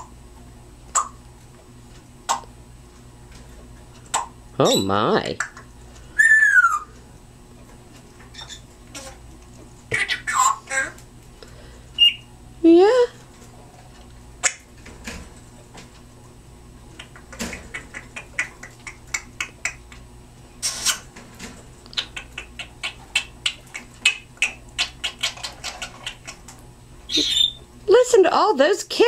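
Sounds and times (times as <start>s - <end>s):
parrot kissing smacks: 17.0s - 19.8s, 21.9s - 26.4s
parrot hissing: 20.6s - 21.1s.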